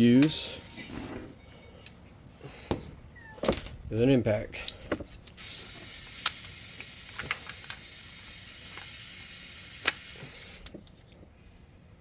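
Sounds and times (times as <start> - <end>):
impact wrench hissing: 0.0 - 1.2, 5.3 - 10.7.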